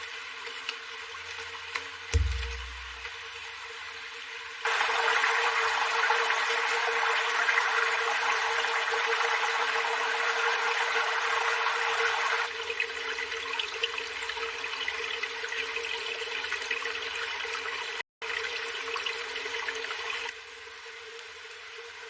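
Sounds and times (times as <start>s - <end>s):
running water rushing: 0.0s - 3.4s.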